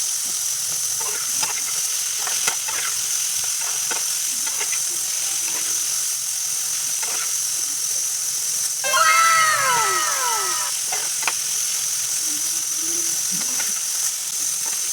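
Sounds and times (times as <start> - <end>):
cat meowing: 8.9 - 10.7.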